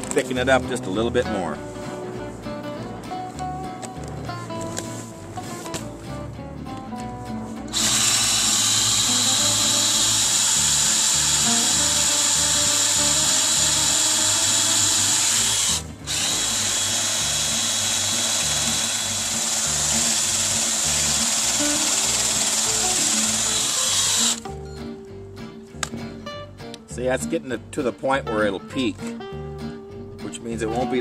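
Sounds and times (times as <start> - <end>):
background music: 0.0 - 31.0
electric drill mixing concrete: 7.7 - 24.6.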